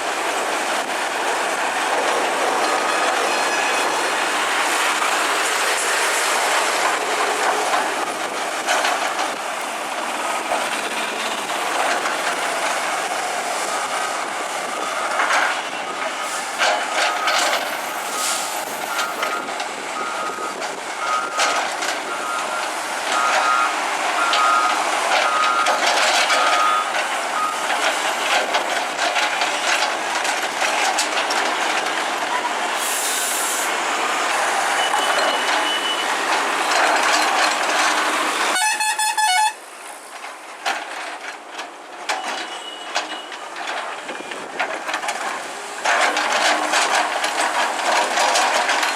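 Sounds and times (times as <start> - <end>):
machinery scraping and clanking: 0.4 - 38.6, 39.9 - 48.9
backup alarm beeping: 34.8 - 36.1.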